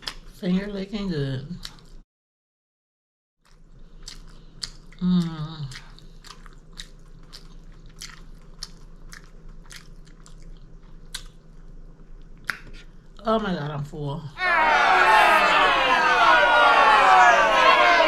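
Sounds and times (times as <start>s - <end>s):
chewing with wet mouth clicks: 1.6s - 2.0s, 3.5s - 13.0s.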